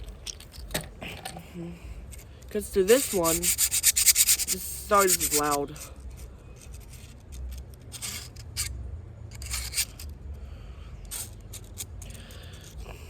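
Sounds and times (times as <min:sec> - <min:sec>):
fidget toy scraping and rubbing: 0:02.1 - 0:10.2, 0:11.0 - 0:12.9.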